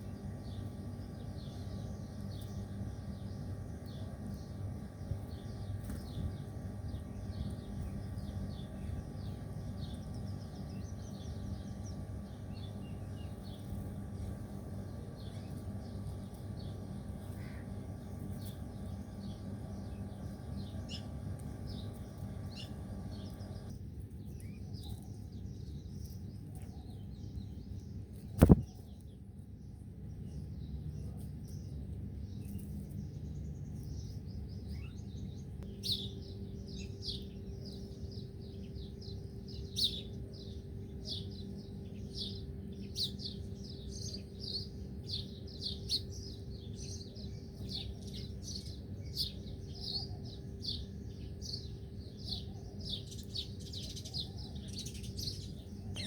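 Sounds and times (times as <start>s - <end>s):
low background rumble: 0.0s - 56.0s
small birds chirping: 0.0s - 56.0s
sharp loud click: 28.4s - 28.7s.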